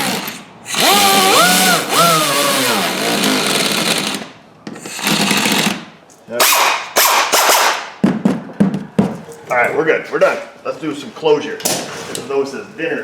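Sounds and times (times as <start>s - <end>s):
power driver whine: 0.0s - 4.3s.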